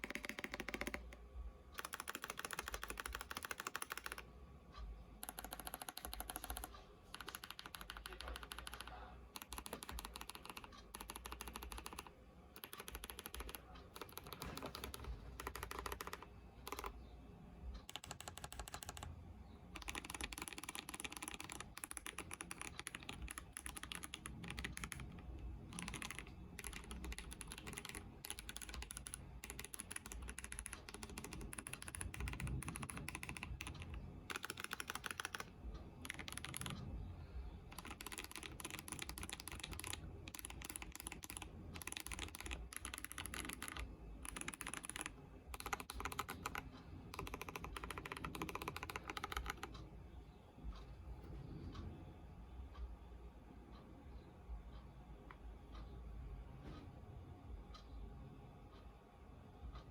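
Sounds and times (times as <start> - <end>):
mechanical keyboard typing: 0.0 - 1.2, 1.8 - 4.3, 5.2 - 17.1, 17.7 - 37.1, 37.7 - 49.9.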